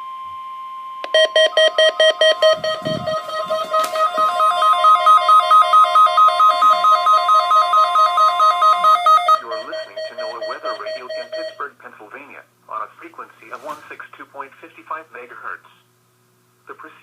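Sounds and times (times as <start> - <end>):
steady warning alarm tone: 1.0 - 11.6
pulsing electronic alarm: 1.1 - 11.6.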